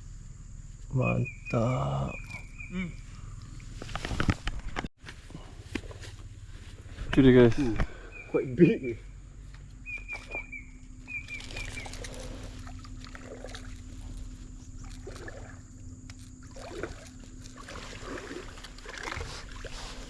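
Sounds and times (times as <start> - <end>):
water sloshing in stream: 9.4 - 20.0.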